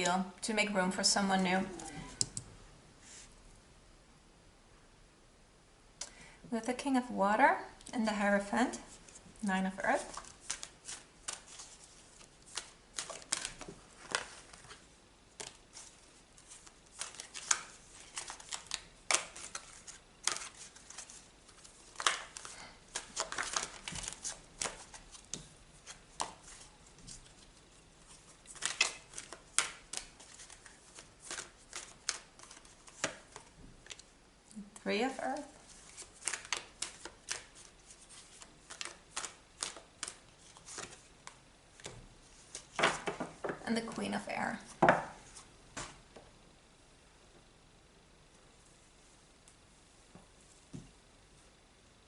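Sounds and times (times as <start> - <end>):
cards rustling: 10.0 - 34.1, 35.6 - 43.6
cards snapping and slapping: 10.1 - 14.8, 15.4 - 15.9, 16.6 - 21.1, 21.9 - 26.6, 28.5 - 34.0, 35.9 - 43.3.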